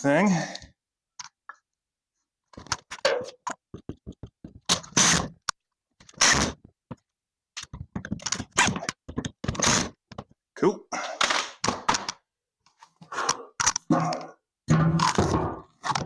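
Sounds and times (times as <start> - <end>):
pencil scratching on wood: 3.8 - 5.4.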